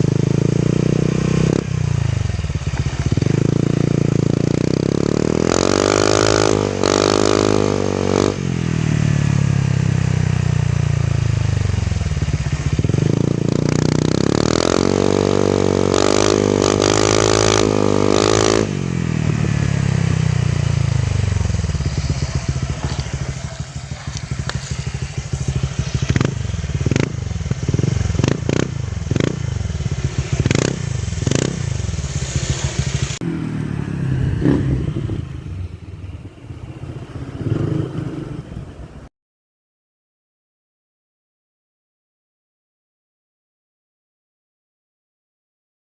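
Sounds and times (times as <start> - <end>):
scooter engine revving: 0.0 - 38.9
choppy exhaust pulsing: 18.8 - 33.3.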